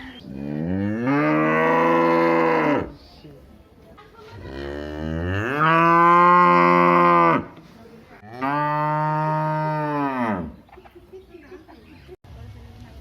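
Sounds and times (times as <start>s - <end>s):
cow mooing: 0.4s - 2.9s, 8.3s - 10.5s.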